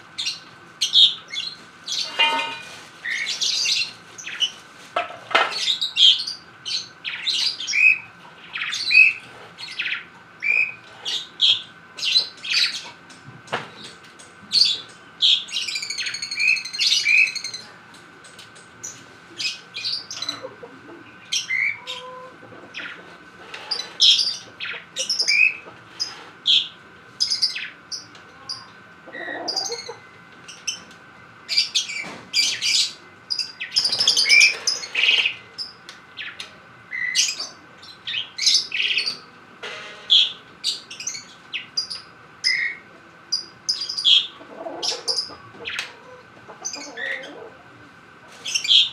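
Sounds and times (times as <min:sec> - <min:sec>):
lovebirds chirping: 0:00.2 - 0:04.6, 0:18.8 - 0:30.9.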